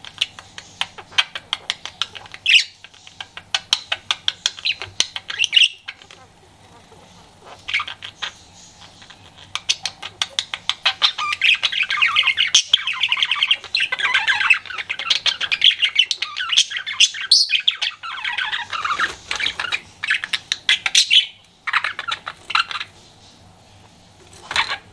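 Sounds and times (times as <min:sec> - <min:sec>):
budgerigar warbling and chirping: 0:00.0 - 0:23.0, 0:24.4 - 0:24.9.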